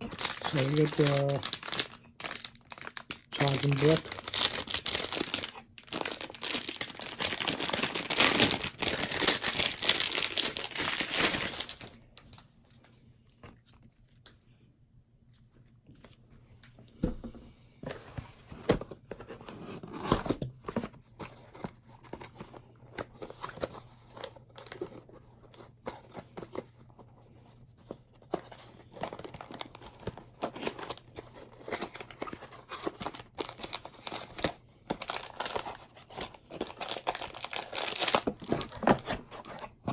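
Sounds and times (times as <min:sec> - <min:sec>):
plastic packaging tearing: 0:00.0 - 0:12.4, 0:29.1 - 0:39.9.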